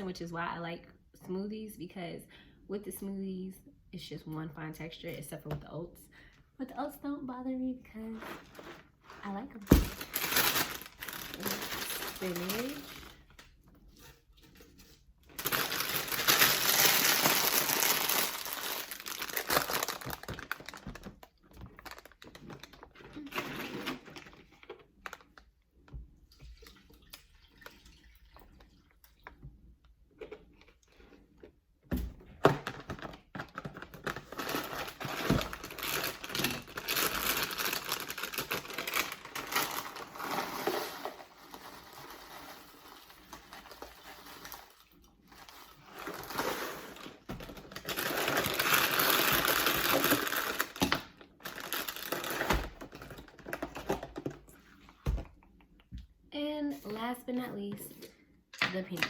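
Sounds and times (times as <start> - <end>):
plastic bag crinkling: 8.1 - 14.6, 15.2 - 25.5, 32.6 - 54.1.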